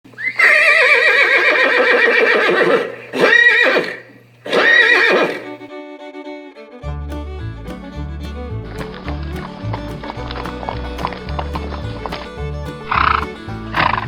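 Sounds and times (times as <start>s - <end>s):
horse whinnying: 0.2s - 5.6s
faint music: 5.4s - 14.0s.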